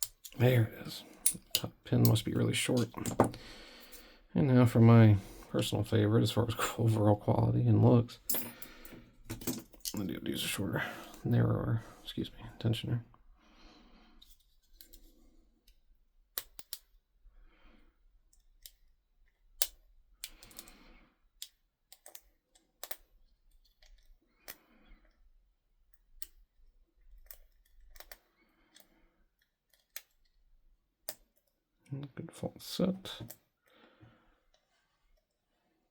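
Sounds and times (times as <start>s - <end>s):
lock pick metallic clicks: 0.0s - 3.4s, 16.4s - 16.9s, 21.4s - 23.1s, 27.0s - 28.9s
faint handling noise: 0.0s - 6.4s.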